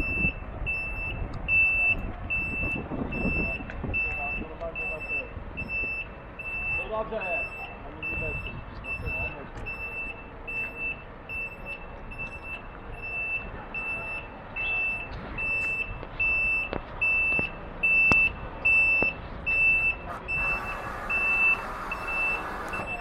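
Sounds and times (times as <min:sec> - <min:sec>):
truck reversing alarm beeping: 0:00.0 - 0:23.0.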